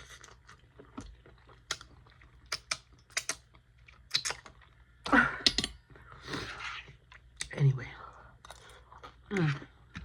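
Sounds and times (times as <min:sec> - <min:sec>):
mouth clicks: 0:02.5 - 0:03.5.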